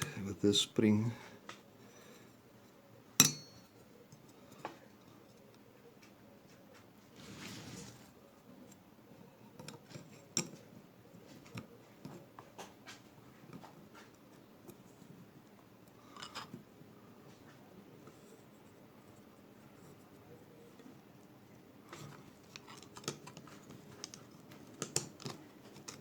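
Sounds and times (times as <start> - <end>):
small metal clicks and taps: 21.9 - 26.0.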